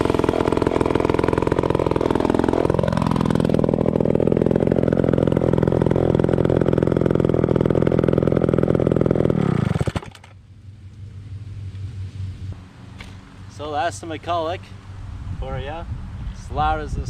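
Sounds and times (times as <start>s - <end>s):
chainsaw running at high speed: 0.0s - 10.3s.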